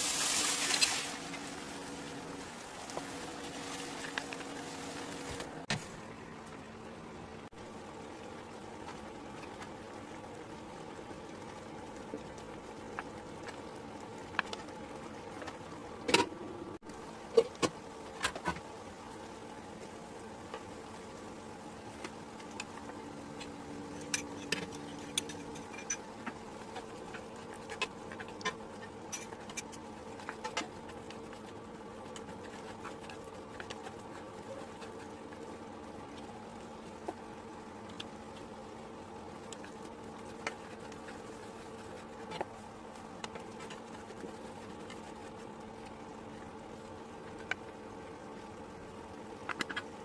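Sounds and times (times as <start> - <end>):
steady buzzing hum: 0.0 - 50.0.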